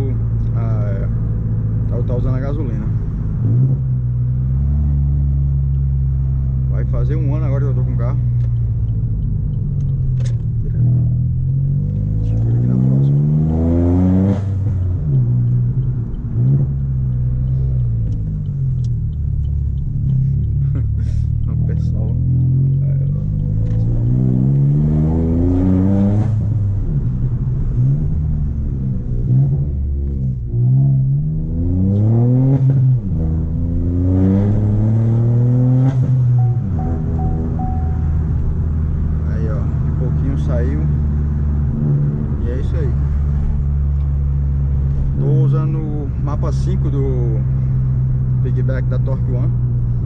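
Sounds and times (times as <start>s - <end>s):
car engine droning while driving: 0.0s - 50.0s.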